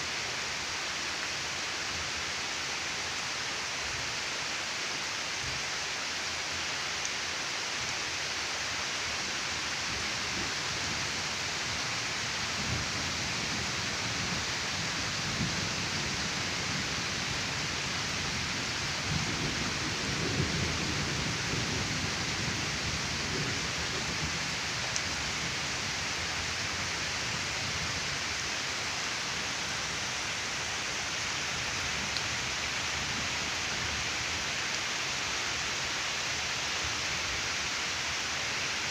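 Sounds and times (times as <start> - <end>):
heavy rain falling: 0.0 - 38.9
low rumbles of wind or thunder: 12.4 - 28.1.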